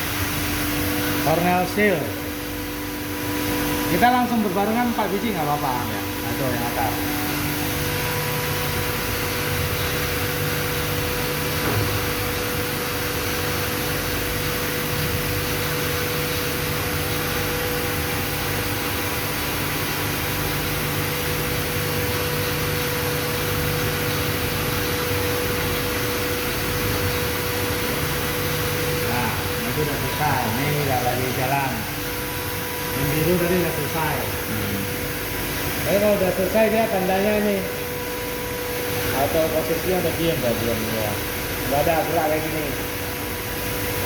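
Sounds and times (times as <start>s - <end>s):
machine hum and hiss: 0.0s - 44.0s
steady whining tones: 14.2s - 44.0s.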